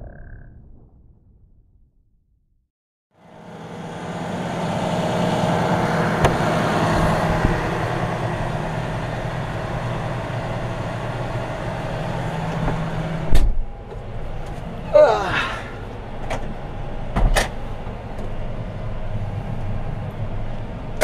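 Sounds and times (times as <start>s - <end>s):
tractor diesel engine running: 3.2s - 14.9s.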